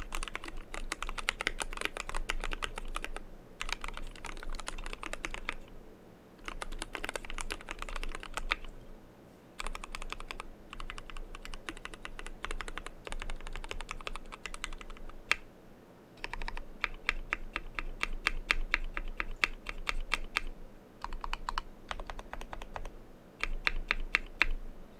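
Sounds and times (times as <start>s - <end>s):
mechanical keyboard typing: 0.0s - 5.7s, 6.4s - 8.7s, 9.6s - 15.5s, 16.2s - 24.6s.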